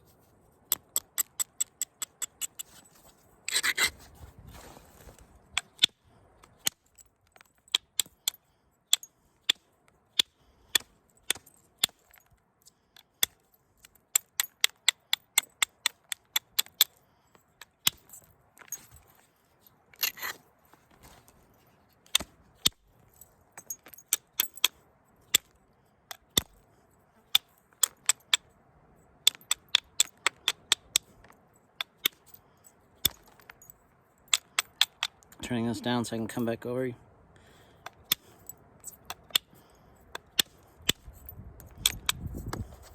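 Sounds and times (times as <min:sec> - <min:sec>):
bone striking stone clicks: 0:00.7 - 0:02.7, 0:05.6 - 0:12.3, 0:27.3 - 0:28.5, 0:29.2 - 0:32.3, 0:33.0 - 0:35.4, 0:37.6 - 0:42.7
short scrapes: 0:02.6 - 0:05.3.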